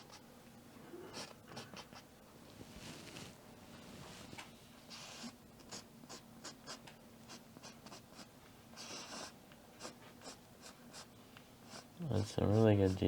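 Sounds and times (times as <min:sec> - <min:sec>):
paint marker scratching: 0:05.7 - 0:11.1, 0:11.7 - 0:13.0.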